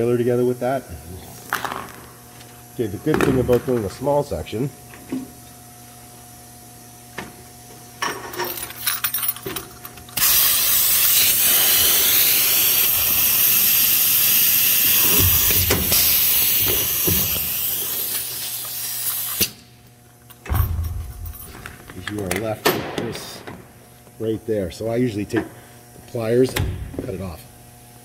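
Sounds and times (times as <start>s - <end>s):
compressed air hissing: 10.2s - 19.6s.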